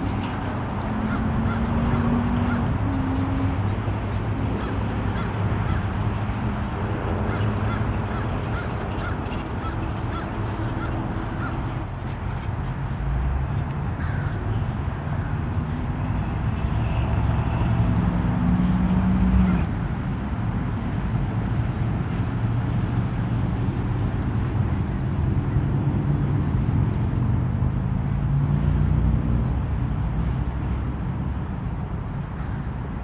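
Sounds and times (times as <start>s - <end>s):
road traffic rumble: 0.0s - 33.0s
faint bird calls: 7.3s - 12.5s, 14.0s - 14.6s.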